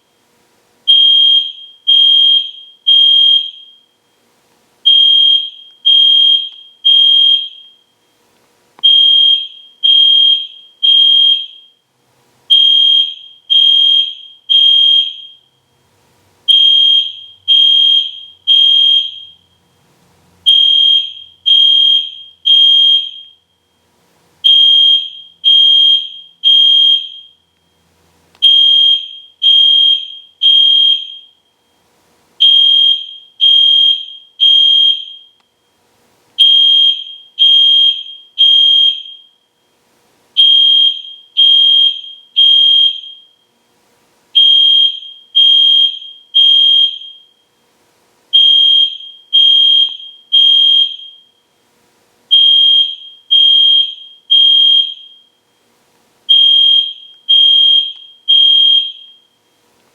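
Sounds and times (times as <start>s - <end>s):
fire alarm horn beeping: 0.9s - 4.0s, 4.8s - 8.0s, 8.8s - 11.8s, 12.5s - 15.6s, 16.5s - 19.8s, 20.4s - 23.8s, 24.4s - 27.6s, 28.4s - 31.7s, 32.4s - 35.8s, 36.4s - 39.5s, 40.4s - 43.5s, 44.4s - 47.5s, 48.3s - 51.5s, 52.3s - 55.4s, 56.3s - 59.6s.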